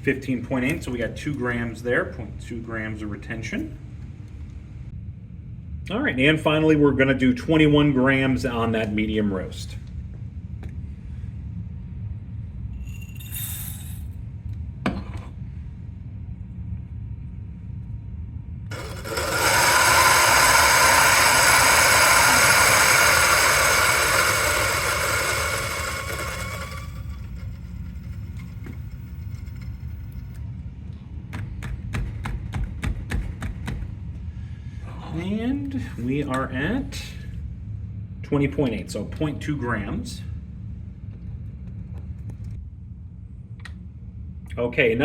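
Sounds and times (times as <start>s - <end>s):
coffee grinder running: 18.7s - 30.3s.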